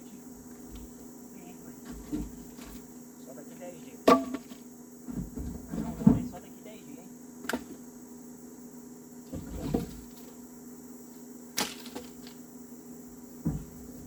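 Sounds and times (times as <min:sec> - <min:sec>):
steady hum: 0:00.0 - 0:14.0
firewood thudding onto pile: 0:04.0 - 0:06.4, 0:11.6 - 0:12.4, 0:13.4 - 0:13.9
sharp wooden crack: 0:11.6 - 0:12.4.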